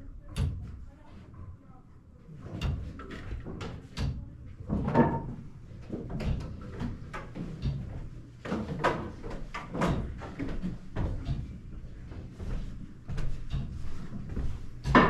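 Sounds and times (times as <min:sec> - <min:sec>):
short knocks and clunks: 0:12.4 - 0:15.0.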